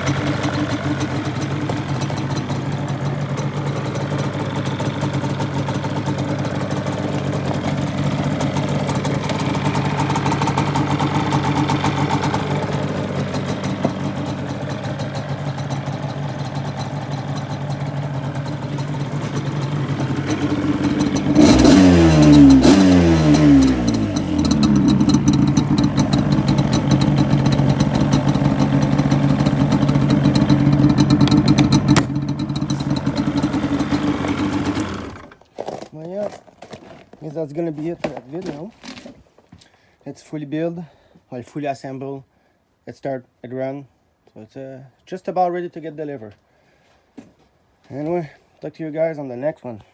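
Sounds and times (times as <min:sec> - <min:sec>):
two-stroke engine idling and revving: 0:00.0 - 0:35.4.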